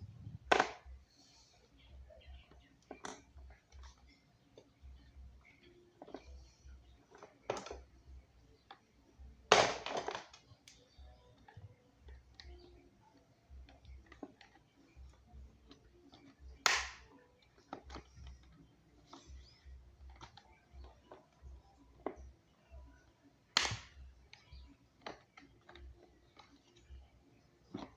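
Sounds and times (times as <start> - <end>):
fan parts clicking and knocking: 23.5 - 27.9.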